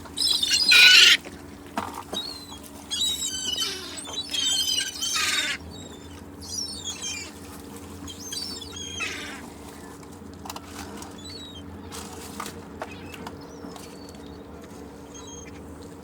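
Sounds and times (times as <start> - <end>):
seagulls squawking: 0.0 - 1.2, 2.1 - 9.7, 12.8 - 15.7.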